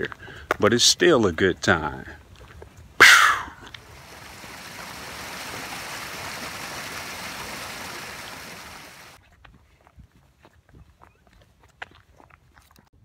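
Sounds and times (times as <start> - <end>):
small stream of water running: 3.3 - 9.2.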